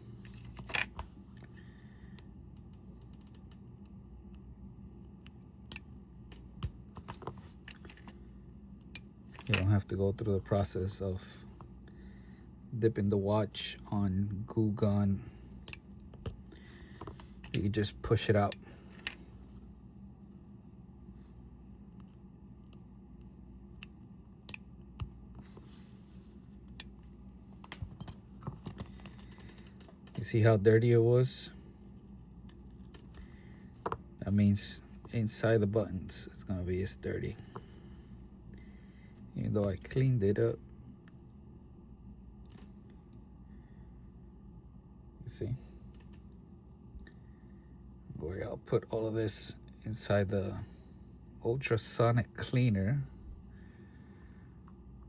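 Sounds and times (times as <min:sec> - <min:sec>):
tools clicking on watch parts: 0:15.6 - 0:15.9, 0:27.7 - 0:29.8.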